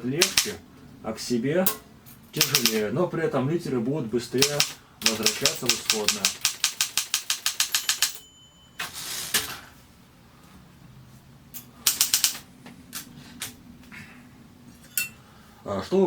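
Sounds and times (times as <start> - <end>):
typewriter keys striking: 0.0 - 0.6, 2.4 - 2.8, 4.4 - 8.2, 11.9 - 12.4
typewriter carriage sliding: 4.4 - 8.2, 8.8 - 9.7.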